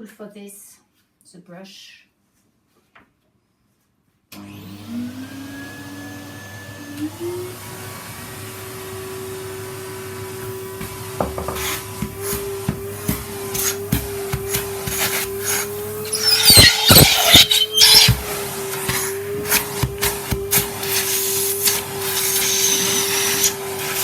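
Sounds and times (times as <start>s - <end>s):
vacuum cleaner motor hum: 4.4s - 24.0s
vacuum nozzle knocking and scraping: 10.0s - 24.0s.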